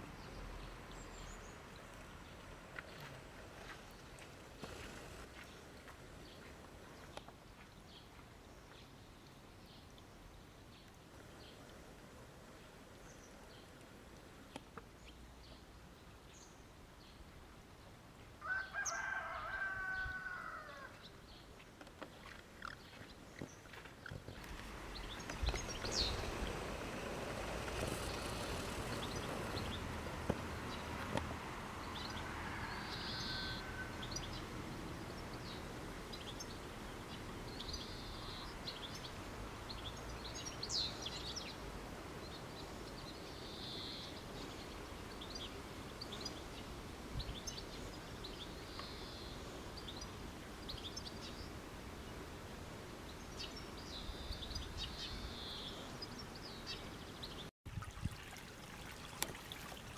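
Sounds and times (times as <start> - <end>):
low steady background noise: 0.0 - 57.5
small birds chirping: 21.3 - 31.2, 32.9 - 52.2, 53.1 - 57.5.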